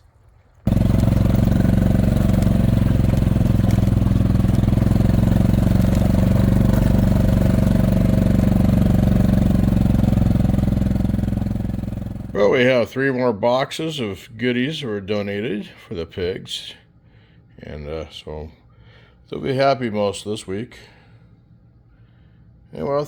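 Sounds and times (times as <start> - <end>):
vehicle engine running: 0.7 - 12.7.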